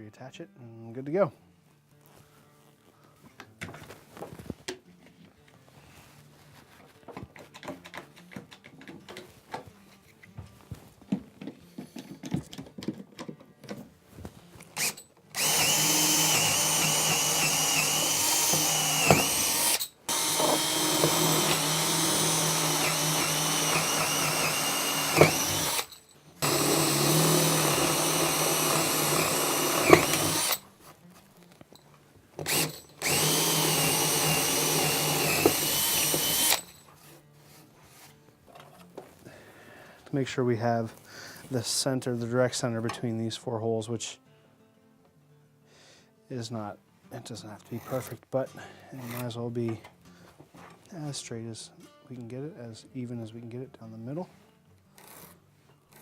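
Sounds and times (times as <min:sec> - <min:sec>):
handling noises and clicks: 0:06.7 - 0:15.3
power drill boring into wood: 0:14.8 - 0:30.6, 0:32.4 - 0:36.8.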